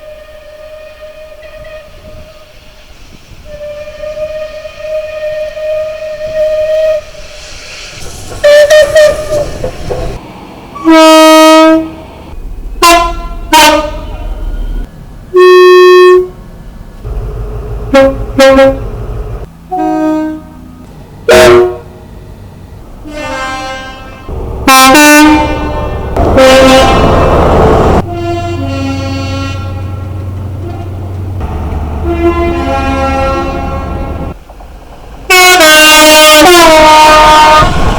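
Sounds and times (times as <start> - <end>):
diesel train horn blasts: 0.0 - 2.6, 3.4 - 7.1, 10.8 - 12.1, 12.8 - 16.4, 17.8 - 22.2, 23.0 - 34.4, 35.3 - 37.9
train rumble: 0.0 - 37.9.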